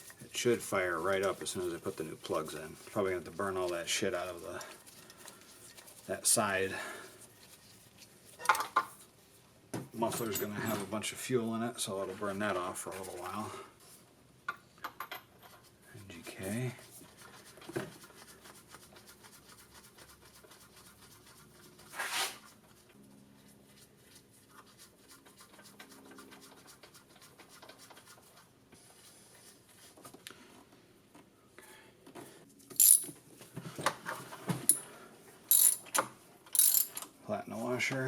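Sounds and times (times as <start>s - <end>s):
tools clicking and clinking: 32.7s - 33.2s, 34.6s - 34.9s, 35.5s - 37.1s.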